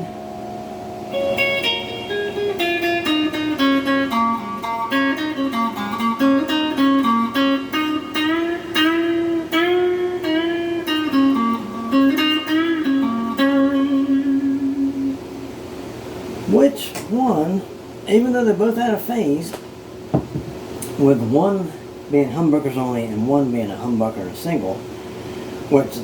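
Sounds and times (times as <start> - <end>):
electric guitar single notes: 0.0 - 16.0.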